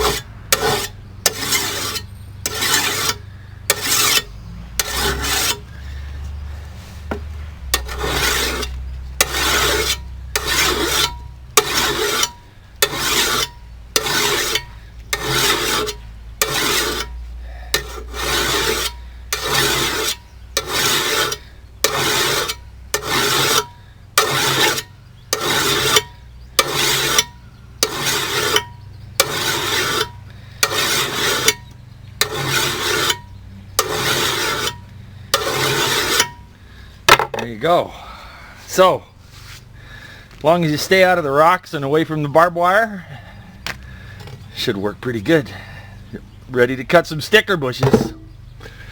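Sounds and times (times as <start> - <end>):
file rasping on steel blade: 0.0 - 5.8, 7.7 - 36.5, 47.8 - 48.8.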